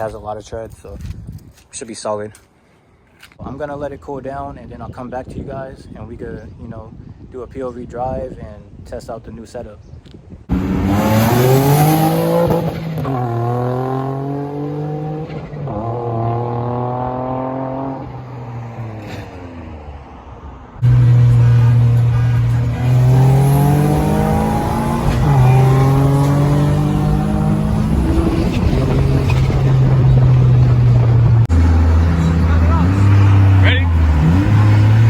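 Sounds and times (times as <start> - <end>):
car engine accelerating hard: 10.5 - 18.2, 20.8 - 35.0.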